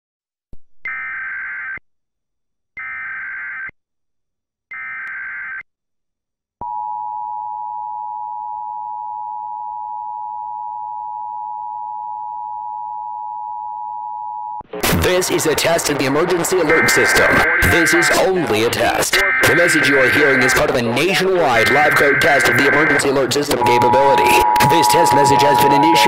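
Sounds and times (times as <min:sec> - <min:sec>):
screechy digital data bursts: 0:15.1 - 0:26.0
steady two-tone attention signal: 0:16.6 - 0:26.0.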